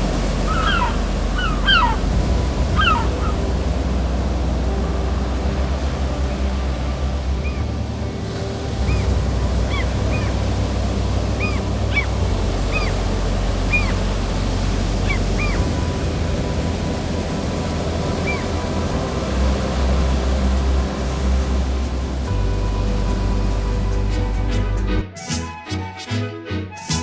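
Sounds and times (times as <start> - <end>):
high bird calls: 0.0 - 4.4, 7.3 - 7.8, 8.8 - 19.8
waves rumbling: 0.0 - 25.0.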